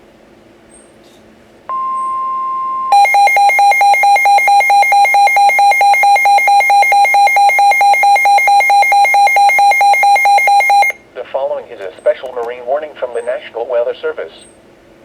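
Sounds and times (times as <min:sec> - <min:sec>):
loud pulsing alarm beep: 0:01.7 - 0:11.0
steady warning alarm tone: 0:01.7 - 0:11.0.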